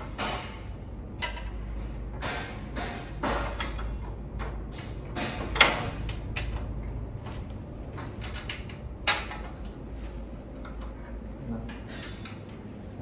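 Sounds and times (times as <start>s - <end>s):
clicks and knocks of screws and tools: 1.2s - 6.8s, 7.9s - 9.7s.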